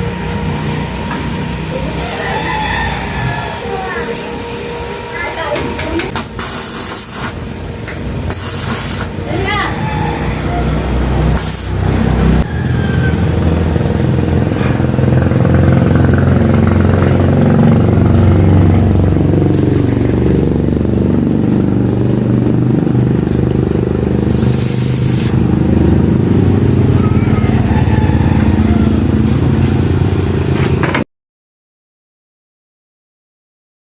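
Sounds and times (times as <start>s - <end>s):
engine running: 0.0s - 31.0s
bursts of hiss: 6.2s - 7.4s, 8.3s - 9.2s, 11.3s - 11.9s, 24.2s - 25.4s.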